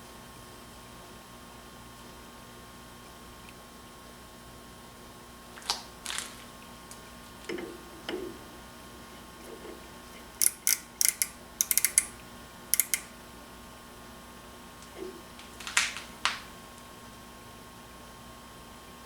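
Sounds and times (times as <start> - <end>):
hand tools and metal parts handled: 10.4 - 12.2, 12.8 - 13.1.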